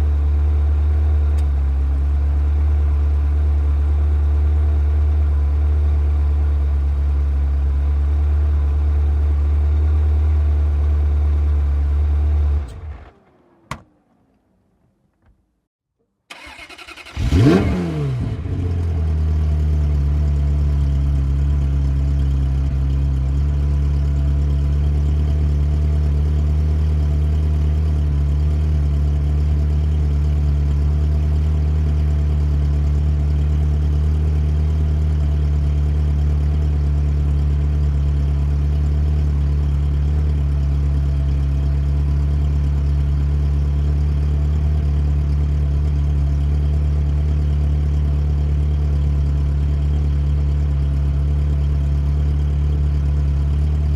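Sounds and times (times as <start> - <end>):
car engine idling: 16.3 - 53.9.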